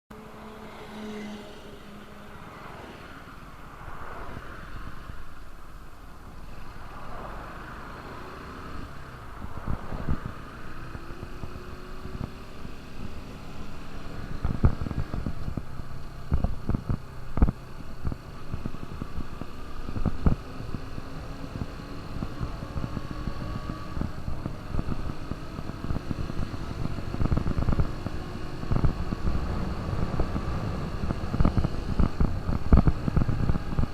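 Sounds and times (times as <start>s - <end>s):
wind buffeting microphone: 9.2s - 33.9s
motorcycle engine running: 10.3s - 33.9s.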